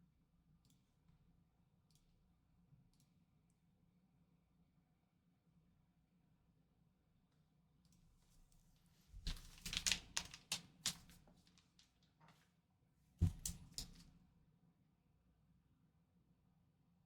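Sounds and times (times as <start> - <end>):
plastic packaging clicking and crinkling: 9.2 - 12.0.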